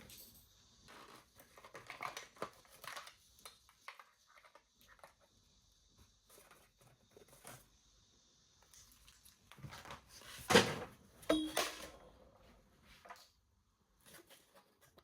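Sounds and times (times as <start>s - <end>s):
packaging clicks and rustles: 1.0s - 5.2s.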